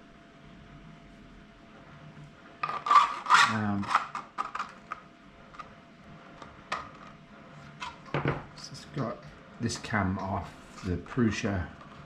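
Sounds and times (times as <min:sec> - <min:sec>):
plastic parts clicking and clattering: 0:02.6 - 0:05.7.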